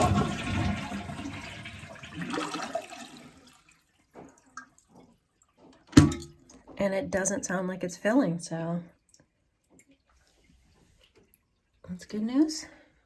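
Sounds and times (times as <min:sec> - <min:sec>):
toilet flushing and draining: 0:00.0 - 0:05.2.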